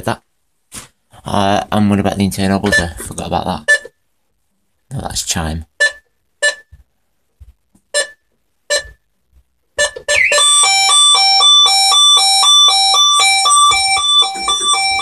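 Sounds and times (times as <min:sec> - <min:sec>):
loud two-tone alarm: 0:09.8 - 0:15.0
alarm system short beeps: 0:10.1 - 0:15.0.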